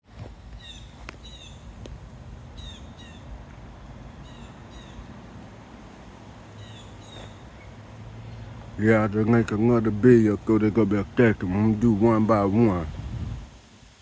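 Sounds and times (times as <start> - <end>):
low steady rumble: 0.0 - 14.0
bird chirping: 0.5 - 1.7, 2.5 - 5.3, 6.4 - 13.1.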